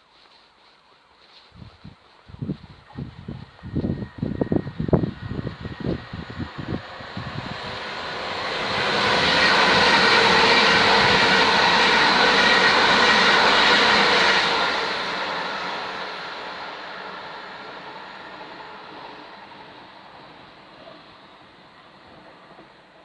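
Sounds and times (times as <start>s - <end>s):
train passing at speed: 2.3s - 23.0s.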